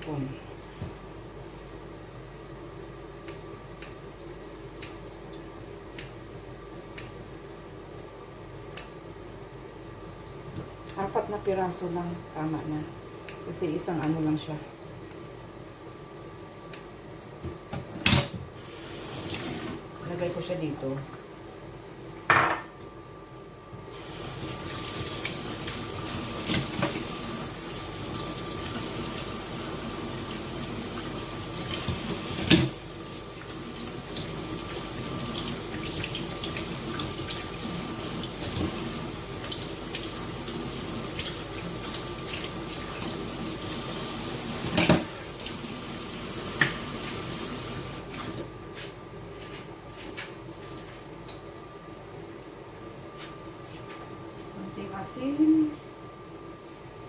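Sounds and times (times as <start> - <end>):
tap running into sink: 46.5 - 48.4.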